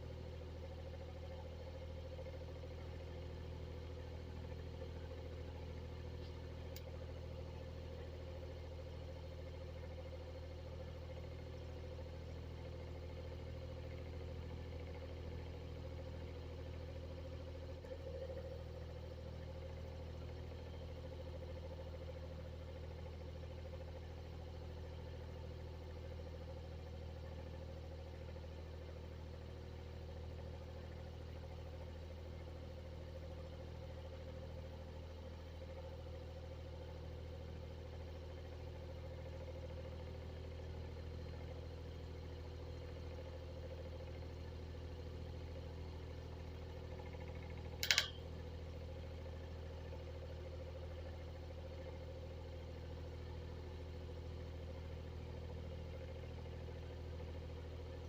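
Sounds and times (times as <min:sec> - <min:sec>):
exhaust fan motor hum: 0:46.4 - 0:52.8.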